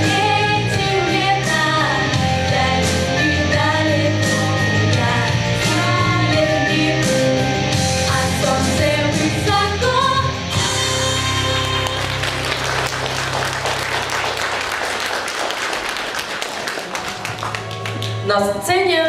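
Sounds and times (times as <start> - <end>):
live pop-rock band: 0.0 - 12.6
audience applause: 11.4 - 18.3.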